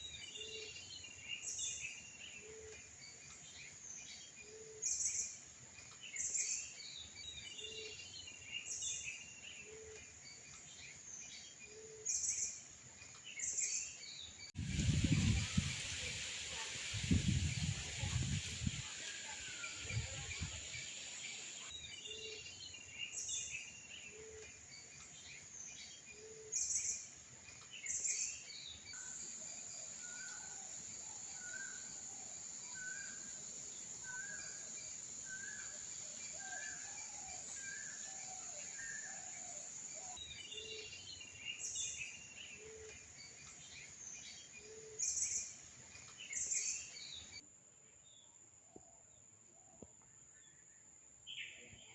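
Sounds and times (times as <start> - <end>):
birds singing and calling: 0.0 - 32.0, 32.6 - 47.4
steady high-pitched hiss: 12.0 - 51.9.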